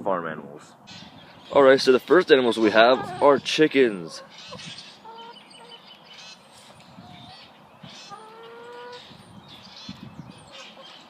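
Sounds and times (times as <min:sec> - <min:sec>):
poultry calling: 0:02.4 - 0:11.0.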